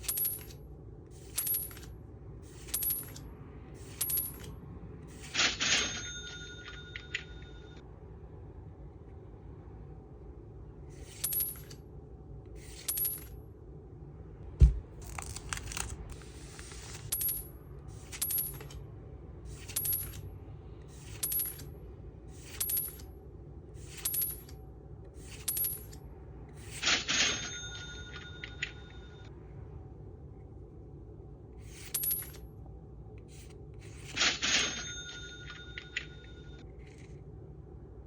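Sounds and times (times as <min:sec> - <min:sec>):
steady ringing tone: 0:05.3 - 0:07.8, 0:26.8 - 0:29.4, 0:34.2 - 0:36.7.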